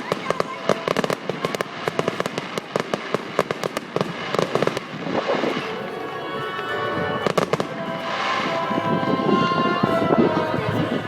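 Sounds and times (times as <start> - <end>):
fireworks crackling and banging: 0.0 - 11.0
music with held notes: 5.6 - 11.0.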